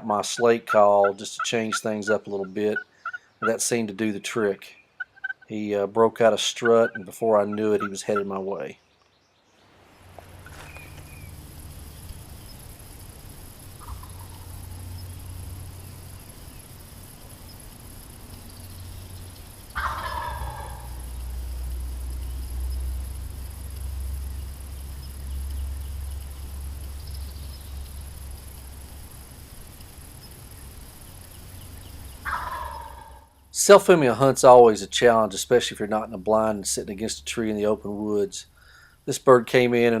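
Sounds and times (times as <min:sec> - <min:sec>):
turkey gobbling: 0:00.0 - 0:04.3, 0:05.0 - 0:08.4, 0:13.7 - 0:14.7, 0:19.7 - 0:21.3, 0:32.1 - 0:33.3
steady low rumble: 0:10.0 - 0:32.3.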